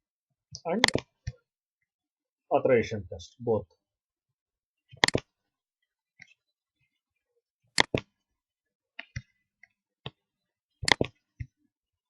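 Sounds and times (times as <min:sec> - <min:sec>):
computer mouse clicking: 0:00.8 - 0:01.1, 0:04.9 - 0:05.3, 0:07.8 - 0:08.1, 0:10.8 - 0:11.5.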